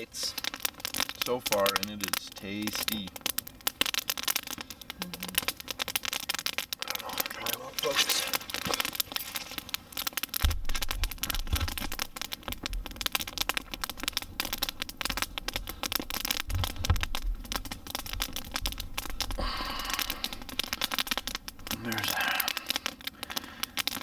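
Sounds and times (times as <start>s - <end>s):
campfire crackling and popping: 0.0s - 24.0s.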